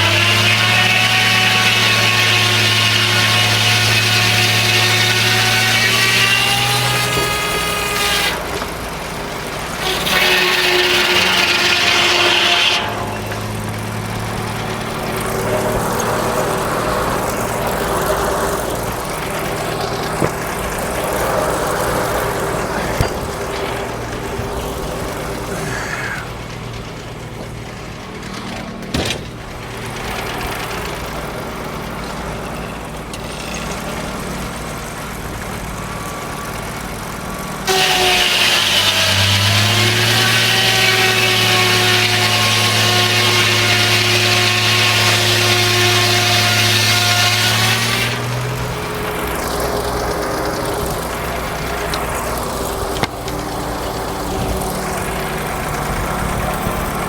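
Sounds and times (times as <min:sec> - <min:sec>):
saw blade cutting log: 0:00.0 - 0:26.5, 0:37.6 - 0:57.0
engine humming steadily: 0:00.0 - 0:57.0
sharp clunks: 0:19.0 - 0:25.4, 0:28.5 - 0:29.7.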